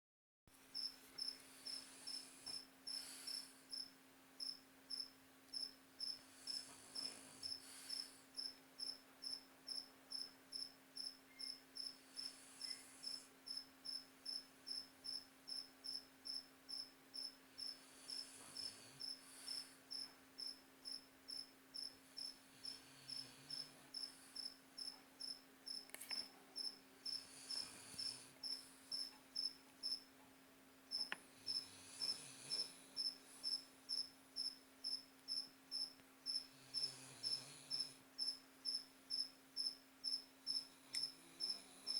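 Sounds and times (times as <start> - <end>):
faint steady hum: 0.5 - 41.9
cricket chirping: 0.7 - 30.1, 30.9 - 41.9.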